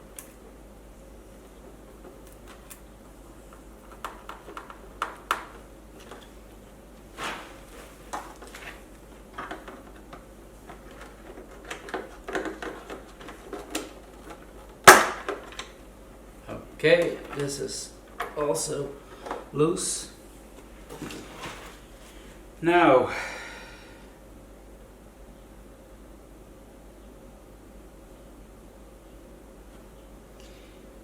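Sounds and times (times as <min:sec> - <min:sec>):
clicks and taps of hands working: 0:03.5 - 0:06.3.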